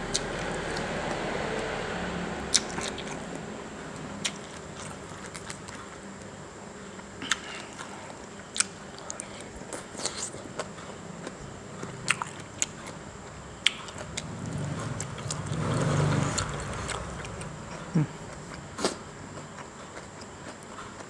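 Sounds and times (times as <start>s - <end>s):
chewing noodles: 7.2s - 21.0s
low rushing noise: 12.5s - 19.4s.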